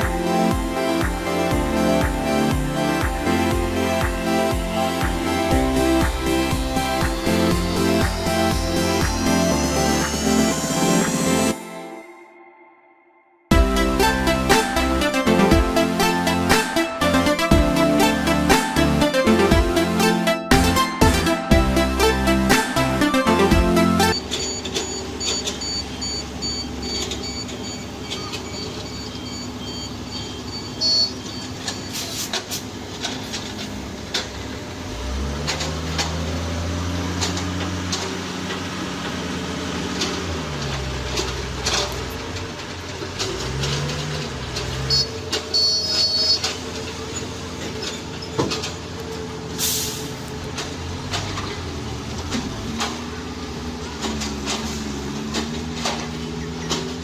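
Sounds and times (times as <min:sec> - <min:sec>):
diesel engine revving: 0:00.0 - 0:11.6, 0:13.5 - 0:57.0
high beeps: 0:24.1 - 0:32.1, 0:44.9 - 0:46.5.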